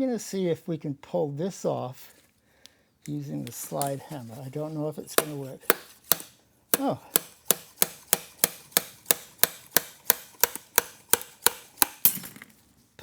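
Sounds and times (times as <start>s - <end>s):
slide hammer metal knocks: 5.1s - 12.5s.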